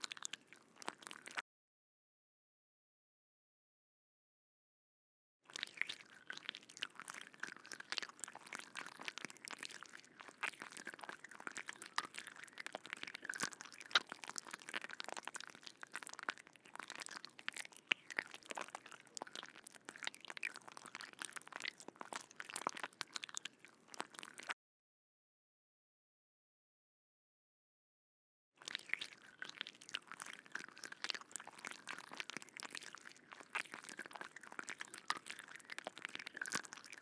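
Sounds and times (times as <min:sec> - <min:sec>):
insect clicks and crunches: 0:10.2 - 0:24.5.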